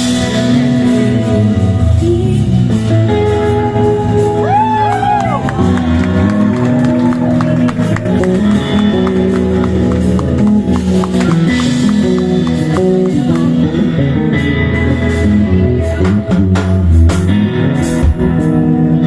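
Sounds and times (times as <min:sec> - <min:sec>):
bass guitar: 0:00.0 - 0:19.0
guitars: 0:00.0 - 0:19.0
percussion ticking steady beat: 0:05.6 - 0:13.9.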